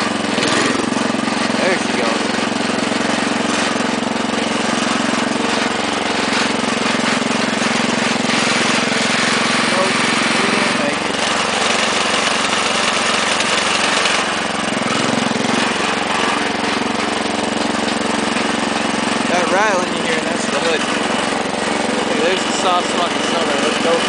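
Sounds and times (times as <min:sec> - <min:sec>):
small tractor engine running: 0:00.0 - 0:24.0
hood rattling: 0:00.2 - 0:24.0.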